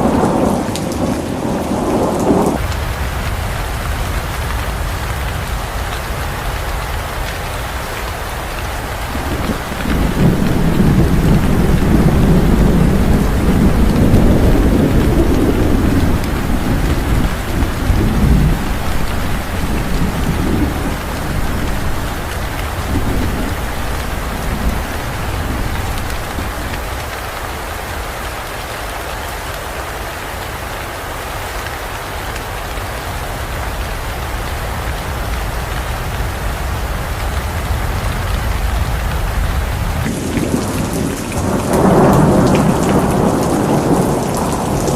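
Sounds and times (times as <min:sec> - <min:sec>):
low roll of thunder: 0:00.0 - 0:07.1, 0:08.6 - 0:27.4, 0:37.5 - 0:44.9
heavy rain: 0:00.0 - 0:44.9.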